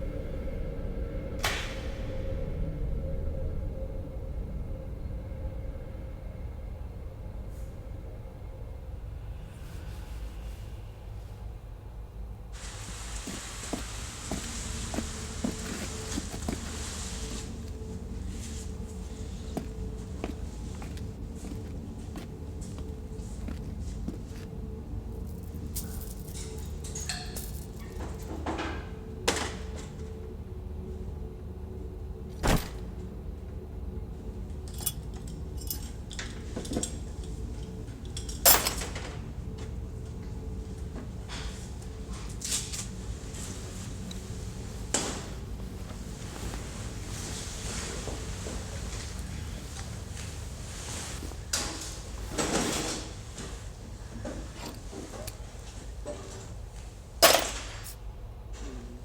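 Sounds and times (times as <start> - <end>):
low steady hum: 0.0 - 59.0
metallic clanks and clinks: 25.4 - 28.4.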